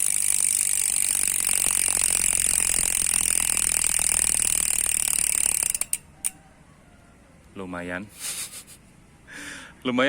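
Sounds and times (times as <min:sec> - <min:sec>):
bike freehub clicking buzz: 0:00.0 - 0:06.4.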